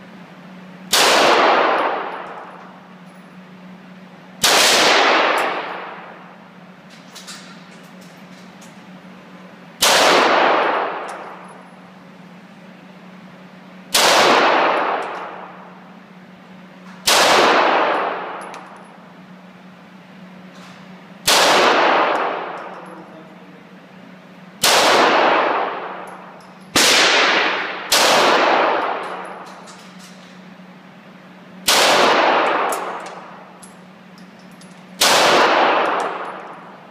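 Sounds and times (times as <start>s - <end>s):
gunshots echoing: 0.9s - 2.5s, 4.4s - 6.2s, 9.8s - 11.3s, 13.9s - 15.5s, 17.0s - 18.4s, 21.2s - 22.7s, 24.6s - 29.4s, 31.7s - 33.3s, 35.0s - 36.5s.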